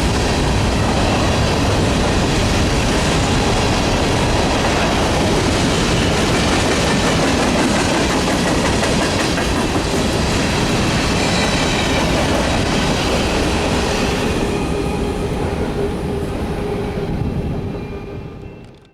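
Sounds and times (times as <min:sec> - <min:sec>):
freight train wheels clattering: 0:00.0 - 0:15.1.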